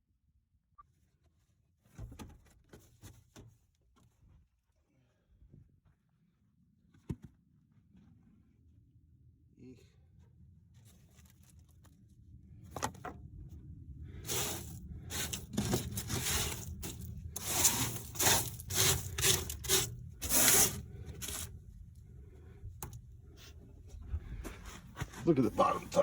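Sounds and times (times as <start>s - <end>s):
scraping and rustling of objects: 10.7s - 13.0s, 14.2s - 21.6s.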